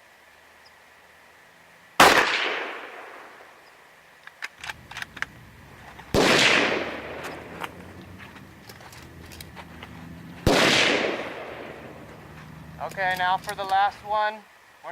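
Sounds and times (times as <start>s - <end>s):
rifle shots: 2.0s - 3.5s, 6.0s - 7.8s, 10.4s - 12.2s
light clicks: 4.2s - 6.1s.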